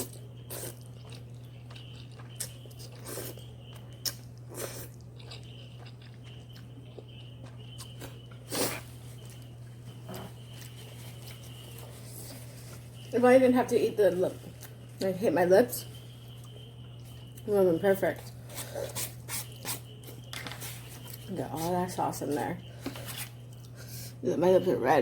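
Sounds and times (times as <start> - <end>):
person chewing noodles: 0.0 - 13.1
steady low hum: 0.0 - 25.0.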